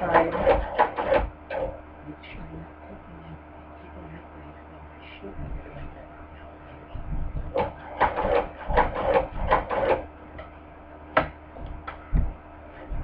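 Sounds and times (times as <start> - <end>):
sewing machine stitch knocks: 0.0 - 1.7, 7.5 - 10.0
sharp mechanical clicks: 0.0 - 1.8, 7.5 - 10.0.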